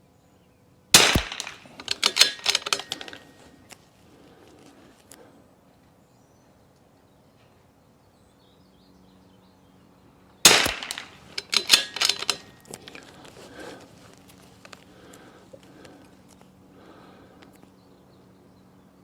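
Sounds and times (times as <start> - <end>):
rifle shot: 1.0 - 3.2, 10.5 - 12.5
metallic clicks and rattles: 1.0 - 3.5, 10.5 - 13.3.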